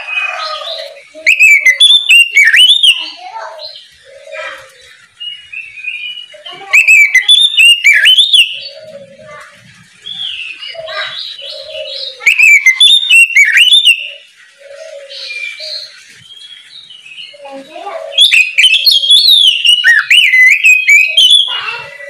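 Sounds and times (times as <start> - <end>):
bird singing whistled notes: 0.7 - 3.9, 5.2 - 8.8, 10.1 - 14.3, 18.1 - 22.0
soft bird warbling: 10.5 - 16.0.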